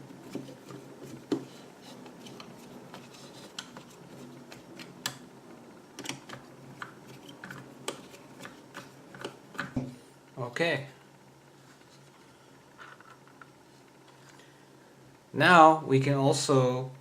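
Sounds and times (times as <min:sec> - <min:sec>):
plastic parts clicking and tapping: 0:06.0 - 0:09.9.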